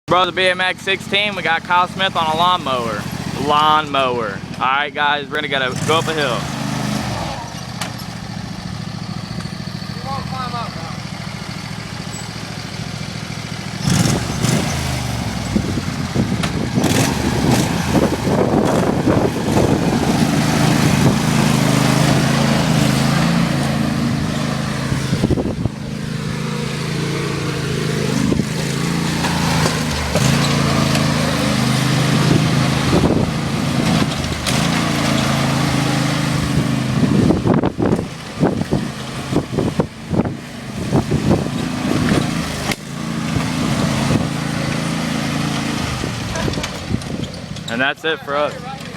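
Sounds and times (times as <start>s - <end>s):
small engine running hard: 0.1s - 48.9s
sharp knocks and rattles: 28.1s - 31.4s.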